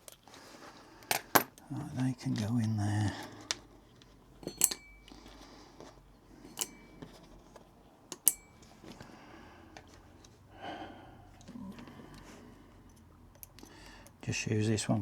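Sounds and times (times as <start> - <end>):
small metal parts clinking: 3.4 - 5.4, 6.4 - 9.0.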